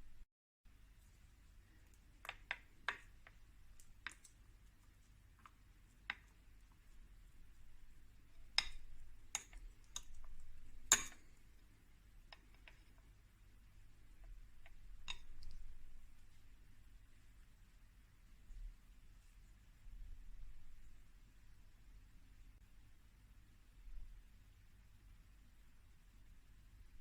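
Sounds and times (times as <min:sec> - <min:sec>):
kitchen utensils clicking and tapping: 0:08.6 - 0:11.4.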